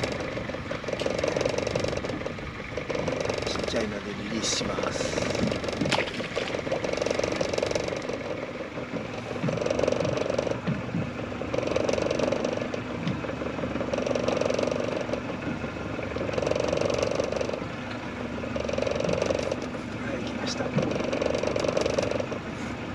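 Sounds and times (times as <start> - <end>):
fishing reel whirring: 0.0 - 8.6, 18.5 - 19.7
steady low hum: 0.0 - 22.9.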